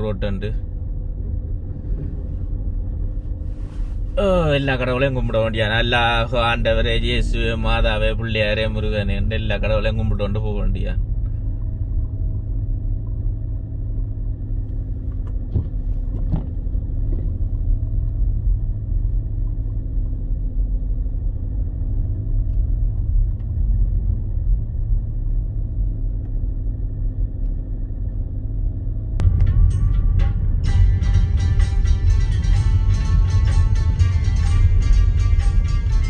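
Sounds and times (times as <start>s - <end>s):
engine hum: 0.0s - 36.0s
road rumble inside car: 0.0s - 36.0s.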